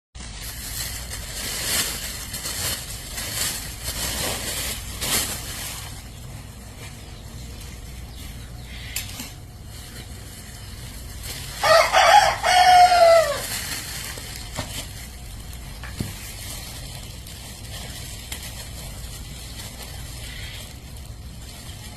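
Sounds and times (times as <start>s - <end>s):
rustling or scraping: 0.2s - 21.9s
rooster crowing: 11.5s - 13.6s.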